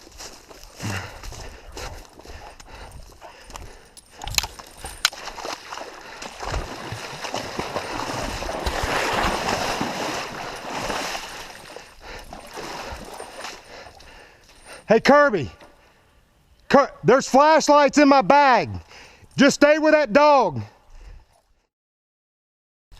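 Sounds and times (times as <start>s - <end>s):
footsteps splashing through water: 0.0s - 14.2s.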